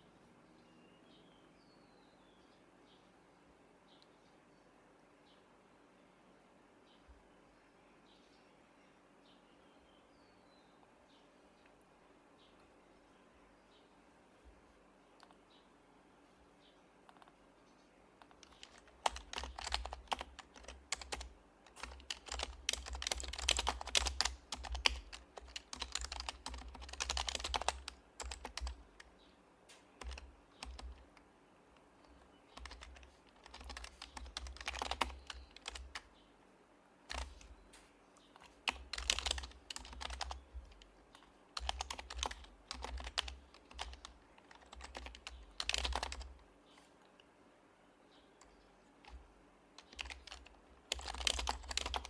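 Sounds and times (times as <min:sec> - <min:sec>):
keyboard typing: 0:18.2 - 0:29.1, 0:29.7 - 0:31.2, 0:31.8 - 0:36.1, 0:37.1 - 0:46.4, 0:48.4 - 0:52.0.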